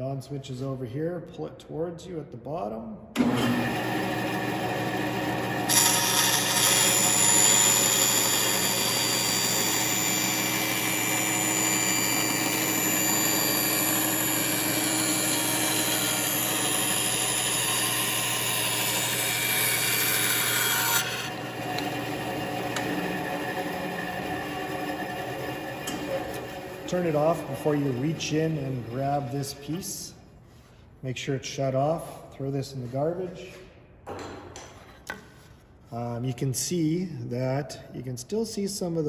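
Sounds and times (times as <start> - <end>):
bandsaw cutting wood: 3.2 - 29.5
dust collector and saw humming: 3.2 - 29.8.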